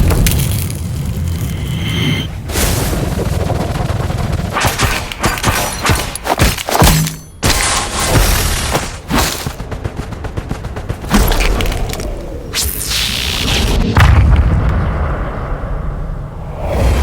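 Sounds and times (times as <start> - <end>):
rapid machine-gun-like shots: 2.6 - 7.0, 7.7 - 13.1
sharp shots: 3.2 - 13.1.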